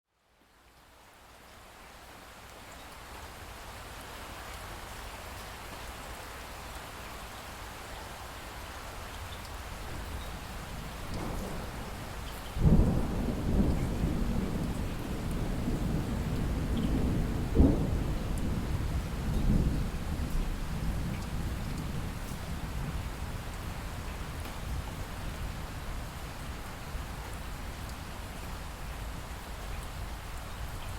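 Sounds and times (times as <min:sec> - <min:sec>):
steady rain: 0:00.1 - 0:30.9
thunder rumbling: 0:10.8 - 0:23.0.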